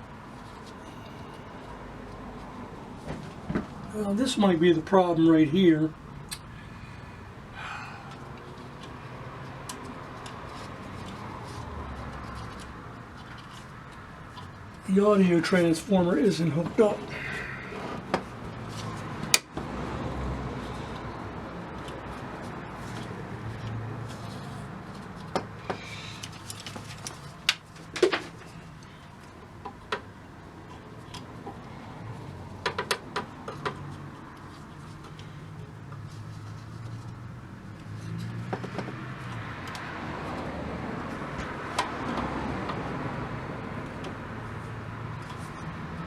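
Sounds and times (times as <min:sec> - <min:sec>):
tools clicking and tapping: 0:32.6 - 0:36.1.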